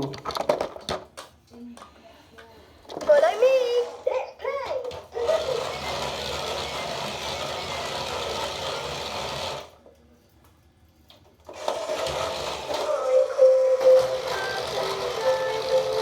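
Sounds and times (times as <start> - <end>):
toy car motors whirring: 4.8 - 9.8, 11.5 - 16.0.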